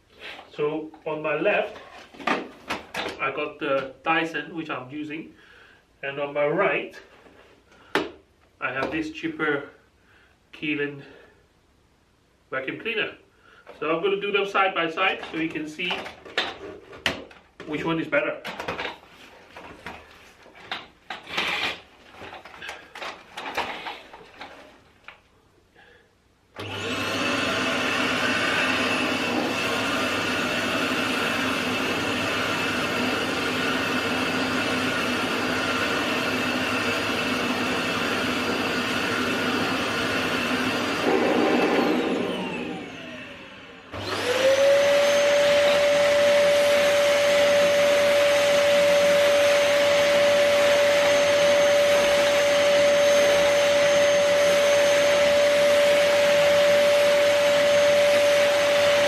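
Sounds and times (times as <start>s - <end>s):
high-pitched vacuum cleaner whine: 26.6s - 59.0s
vacuum cleaner motor whine: 26.6s - 59.0s.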